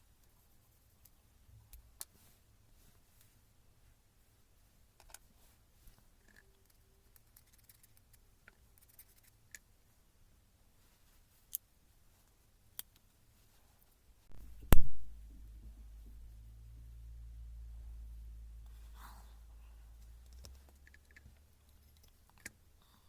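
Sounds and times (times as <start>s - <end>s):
low hum: 14.3s - 21.1s.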